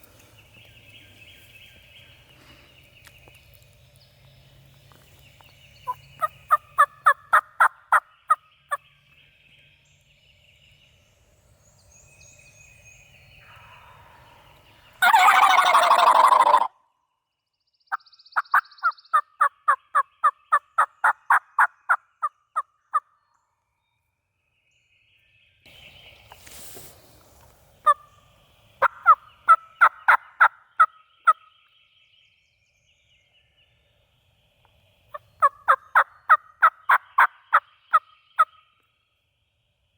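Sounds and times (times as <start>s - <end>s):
small birds chirping: 0.0s - 16.6s, 17.8s - 39.9s
turkey yelping: 6.2s - 7.8s, 15.0s - 16.7s, 28.8s - 30.9s
turkey gobble: 6.2s - 8.0s, 15.0s - 16.7s, 28.8s - 31.4s, 35.4s - 38.5s.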